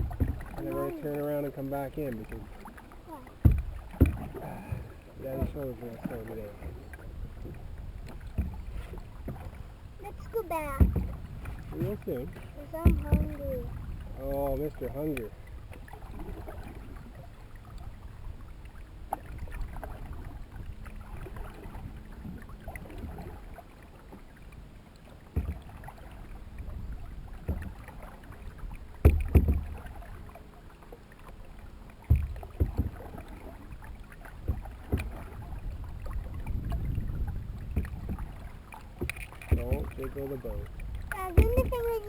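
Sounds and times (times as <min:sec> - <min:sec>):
dull knocks against canoe: 0:00.0 - 0:00.8, 0:01.9 - 0:17.0, 0:25.2 - 0:30.4, 0:31.9 - 0:42.0
paddle strokes in water: 0:00.0 - 0:42.0.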